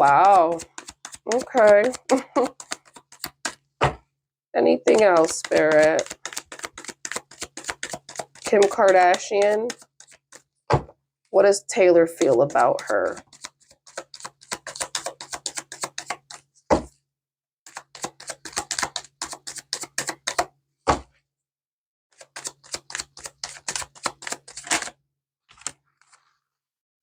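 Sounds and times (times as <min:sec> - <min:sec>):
typewriter keys clacking: 0:04.9 - 0:09.8.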